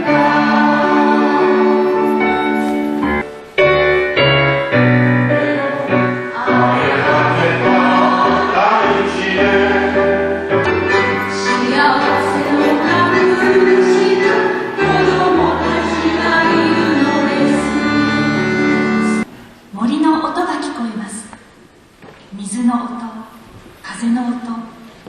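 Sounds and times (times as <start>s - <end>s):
choir singing sustained notes: 0.0s - 3.2s, 4.9s - 19.3s
instrumental accompaniment: 0.0s - 19.3s.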